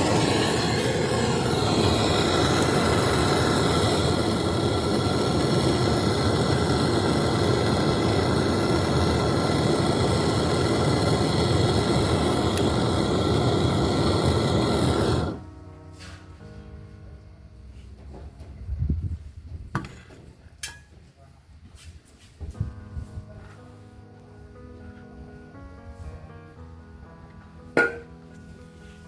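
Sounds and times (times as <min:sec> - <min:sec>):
loud machine noise with tones: 0:00.0 - 0:15.4.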